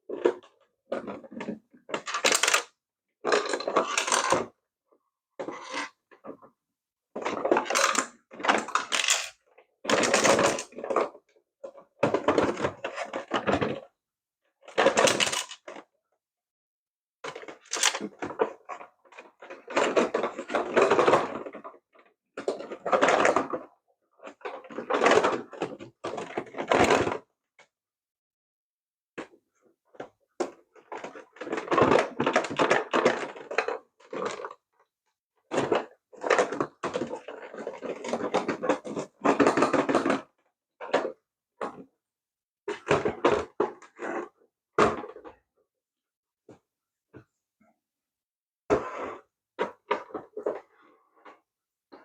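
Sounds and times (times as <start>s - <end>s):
plastic toy parts clattering: 0.1s - 4.6s, 7.2s - 13.8s, 14.6s - 15.9s, 17.3s - 21.8s, 29.9s - 34.6s.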